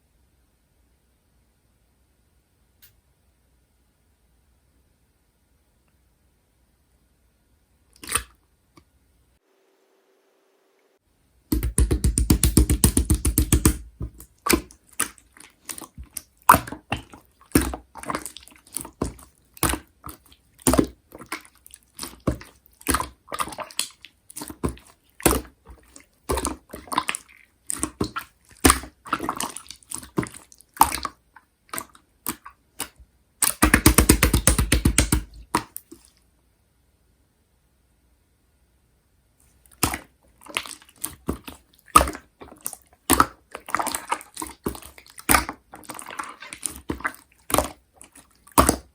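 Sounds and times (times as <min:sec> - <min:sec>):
slime squelching: 0:08.0 - 0:08.4, 0:11.5 - 0:36.2, 0:39.5 - 0:48.9.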